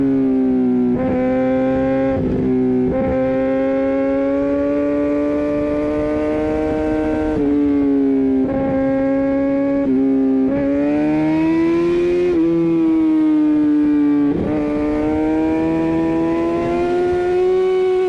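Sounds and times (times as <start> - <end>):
motorcycle engine revving high: 0.0 - 18.0.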